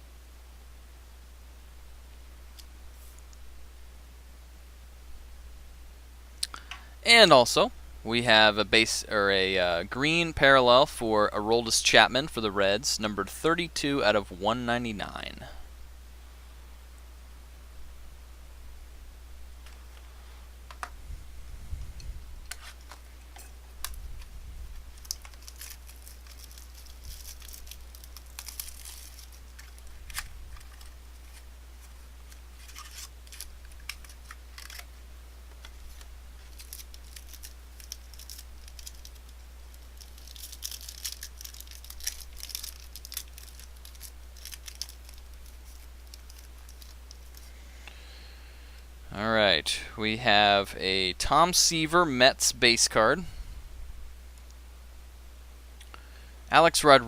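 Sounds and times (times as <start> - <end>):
low electrical hum: 0.0 - 57.0
card pack tearing and crinkling: 24.8 - 47.6.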